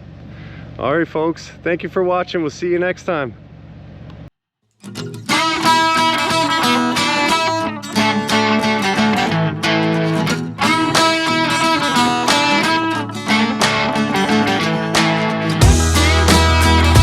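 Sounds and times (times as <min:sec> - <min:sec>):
guitar music plucked and strummed: 0:04.8 - 0:17.0.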